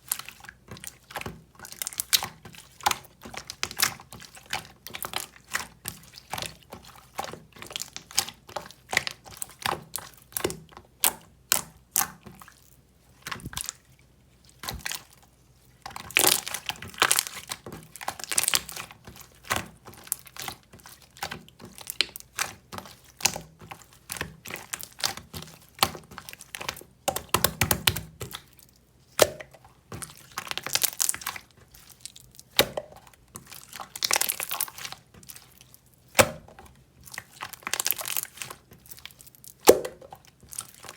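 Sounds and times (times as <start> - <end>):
crinkling: 12.3 - 40.9.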